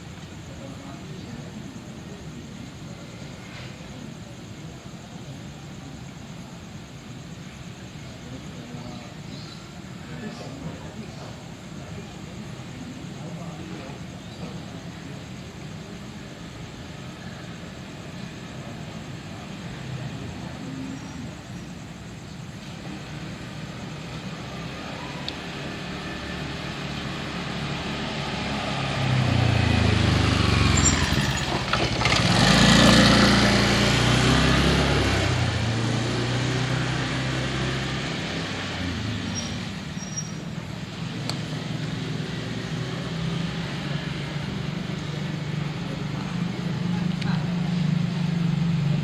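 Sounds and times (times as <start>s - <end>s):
traffic hum: 0.0s - 49.0s
vehicle passing close by: 24.0s - 49.0s.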